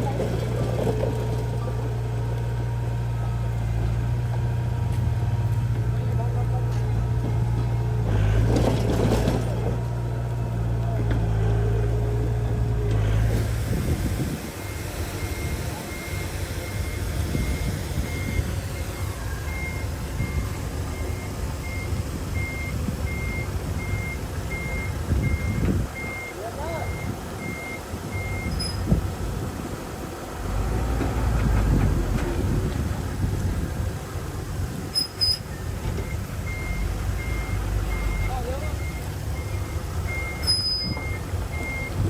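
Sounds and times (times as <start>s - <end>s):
diesel engine rumble: 0.0s - 42.0s
reversing alarm beeping: 14.6s - 28.8s, 35.0s - 42.0s.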